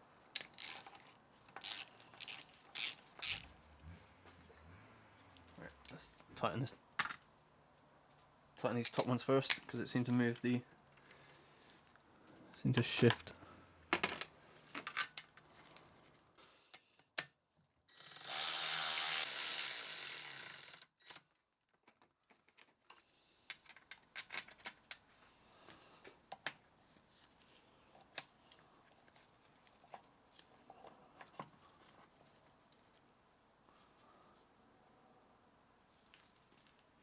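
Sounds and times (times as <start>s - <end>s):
ratchet clicks: 0.4s - 0.9s, 1.6s - 3.4s, 17.9s - 21.2s
ratchet tightening bolts: 0.4s - 0.9s, 1.6s - 3.4s.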